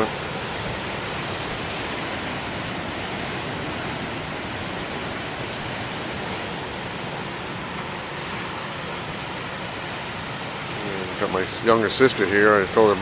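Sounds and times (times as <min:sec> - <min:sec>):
big waves breaking on beach: 0:00.0 - 0:13.0.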